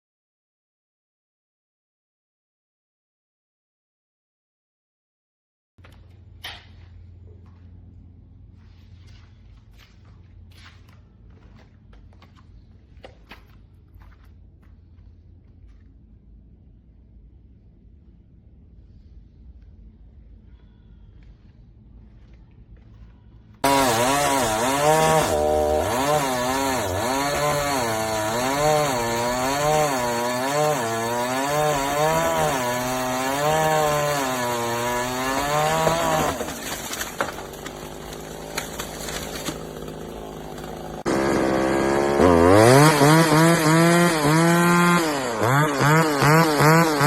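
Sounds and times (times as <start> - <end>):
chainsaw cutting wood: 23.6 - 47.0.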